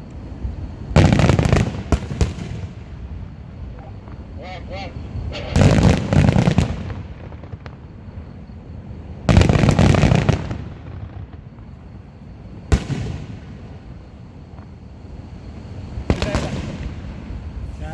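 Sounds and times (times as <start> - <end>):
fireworks crackling bursts: 0.0 - 17.9
firework sharp bang: 5.3 - 7.8, 12.7 - 13.5, 16.1 - 17.2.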